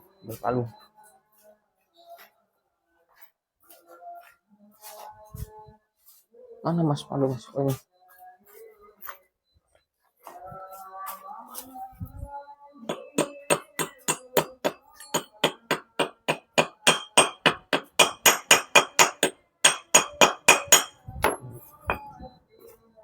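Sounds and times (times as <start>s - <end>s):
hammer tapping on metal: 12.9s - 22.1s.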